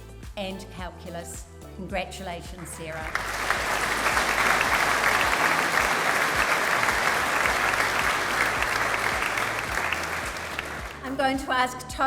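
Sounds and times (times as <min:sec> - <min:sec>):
audience clapping: 0:02.6 - 0:11.5.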